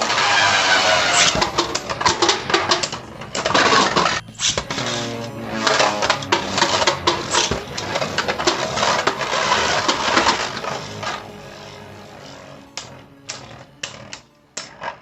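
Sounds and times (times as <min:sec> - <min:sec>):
spinning tops clashing and scraping: 0:00.0 - 0:14.9.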